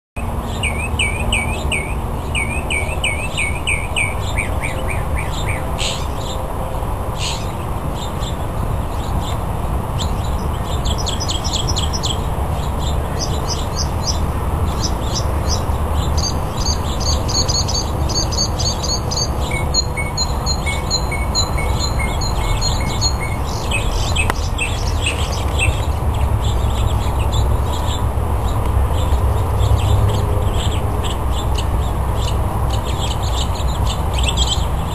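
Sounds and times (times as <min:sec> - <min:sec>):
mockingbird singing: 0:00.2 - 0:06.4, 0:10.0 - 0:28.0.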